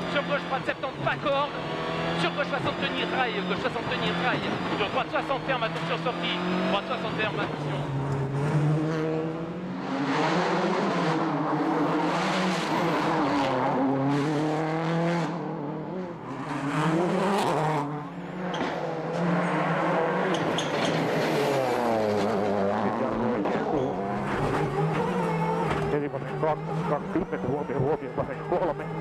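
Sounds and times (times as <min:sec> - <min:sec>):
rally car engine revving: 0:00.0 - 0:29.0.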